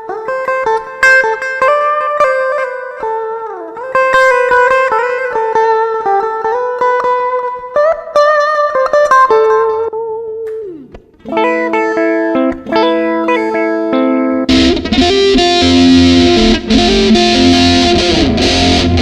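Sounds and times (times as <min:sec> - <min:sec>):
bass guitar plucked notes: 0:09.5 - 0:19.0.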